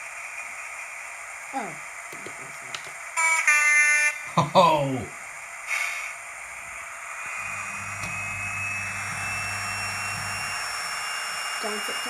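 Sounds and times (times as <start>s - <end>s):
diesel engine sound: 4.6s - 12.0s
turbo whine rising: 6.3s - 12.0s.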